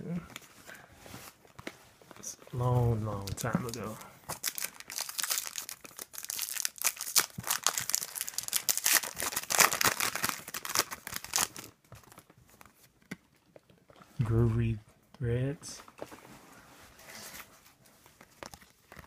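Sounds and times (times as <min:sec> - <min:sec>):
foil wrapper tearing and crinkling: 0:03.3 - 0:12.2.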